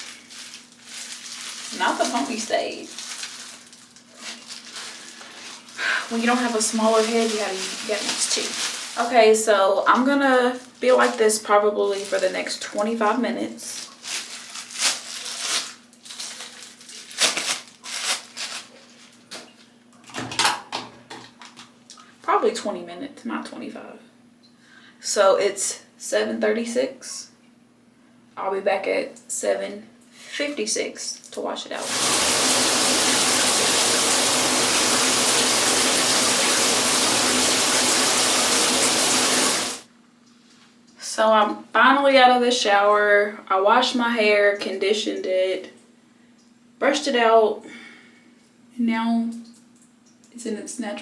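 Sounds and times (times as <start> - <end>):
plastic bags crinkling: 0.0 - 19.7
shower water spraying: 4.8 - 9.2, 31.8 - 39.9
faint steady hum: 21.0 - 51.0.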